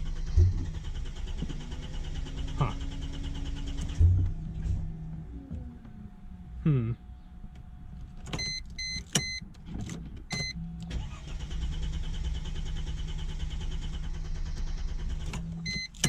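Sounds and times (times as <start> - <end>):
car starter cranking: 0.0 - 6.4, 7.3 - 16.0
electronic dashboard chimes: 8.4 - 9.4, 15.6 - 16.0.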